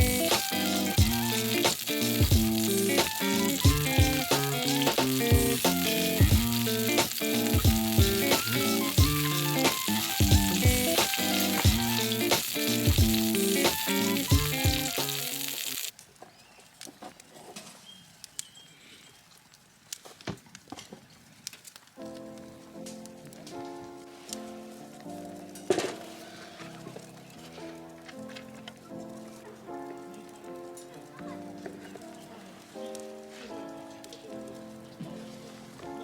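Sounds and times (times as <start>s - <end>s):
background music with beat: 0.0s - 15.6s
food sizzling: 0.0s - 15.9s.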